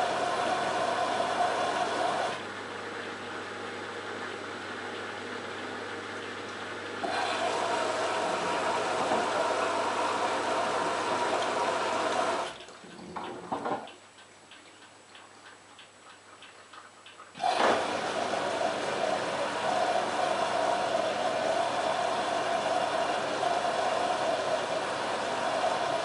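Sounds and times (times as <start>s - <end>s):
washing machine water rushing: 0.0s - 14.0s, 16.4s - 26.0s
knocks from washing drum: 13.0s - 13.9s.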